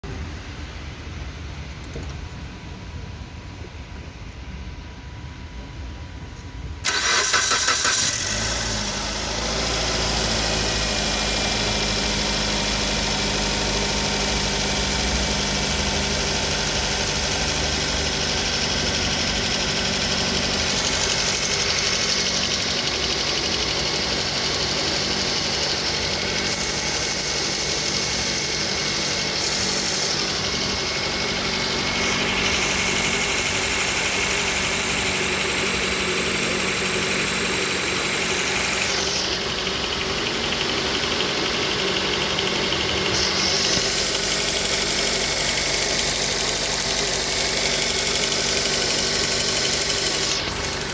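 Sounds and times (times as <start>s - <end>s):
car engine starter cranking: 6.8s - 9.0s, 42.8s - 50.9s
car engine idling with knock: 16.1s - 50.9s.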